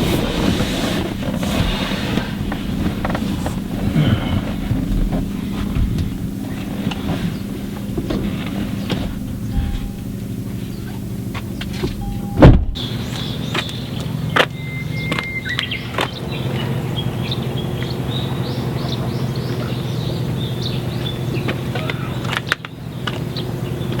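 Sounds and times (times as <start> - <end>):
heavy thump: 0.0 - 10.4, 11.3 - 12.8
car engine running: 0.0 - 24.0.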